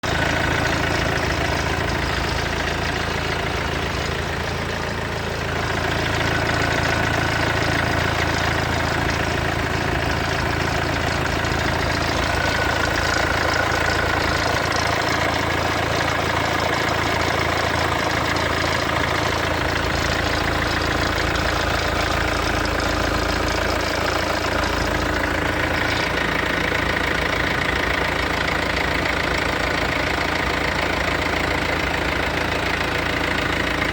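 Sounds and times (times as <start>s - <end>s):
diesel engine idling: 0.0s - 33.9s
engine rattle: 0.0s - 33.9s.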